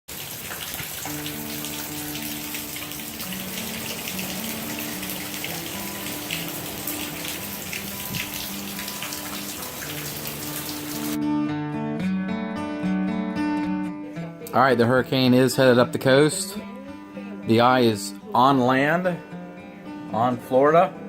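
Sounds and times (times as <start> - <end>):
rain hissing: 0.1 - 11.2
soft music with held notes: 0.8 - 21.0.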